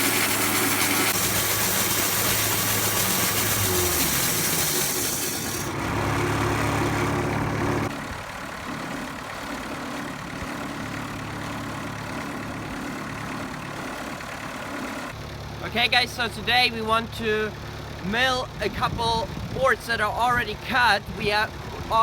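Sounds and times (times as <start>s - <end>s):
loud hiss: 0.0s - 5.7s
engine running: 0.0s - 22.0s.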